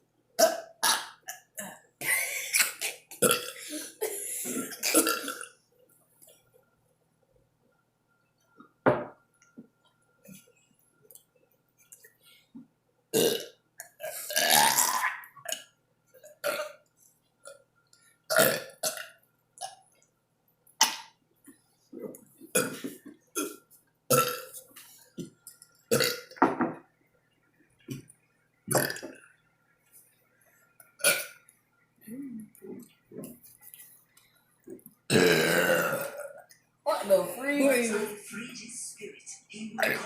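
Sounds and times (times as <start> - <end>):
person burping: 0.4 - 5.6, 13.1 - 16.8, 18.3 - 19.8, 22.5 - 24.6, 25.9 - 26.4, 28.7 - 29.2, 31.0 - 31.4, 35.1 - 36.5, 39.8 - 40.0.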